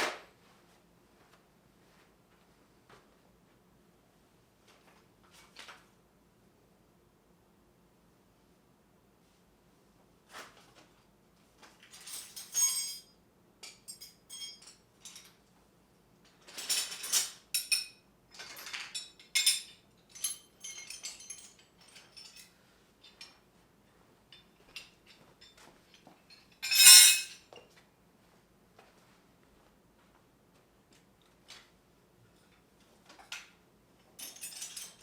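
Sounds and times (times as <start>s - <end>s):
metal hand tools clinking: 13.7s - 15.3s, 26.6s - 27.4s.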